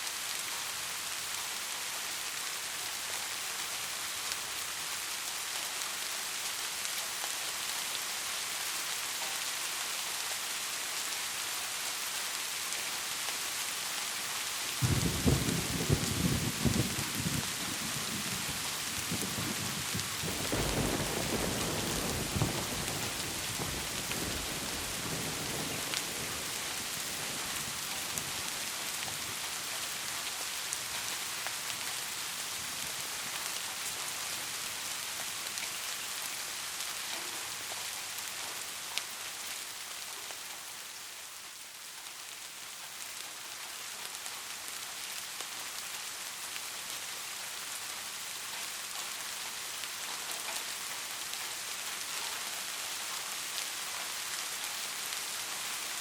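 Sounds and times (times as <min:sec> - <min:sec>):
steady rainfall: 0:00.0 - 0:56.0
thunder rumble: 0:14.8 - 0:27.5.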